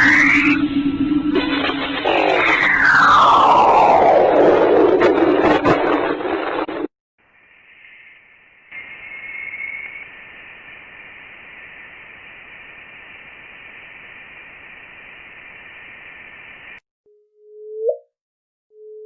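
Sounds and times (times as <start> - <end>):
static-like hiss: 7.2 - 16.8.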